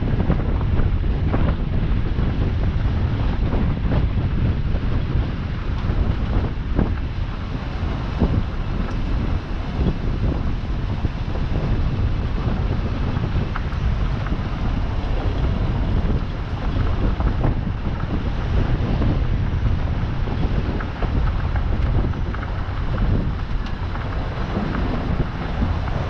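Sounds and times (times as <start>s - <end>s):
heavy machinery rumbling: 0.0s - 26.0s
wind buffeting microphone: 0.0s - 26.0s.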